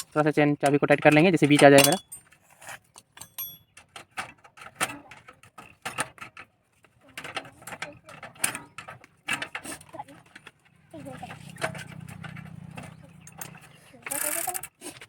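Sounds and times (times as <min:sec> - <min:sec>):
metal tool clicking on bolt: 0:00.0 - 0:02.2, 0:03.2 - 0:03.7.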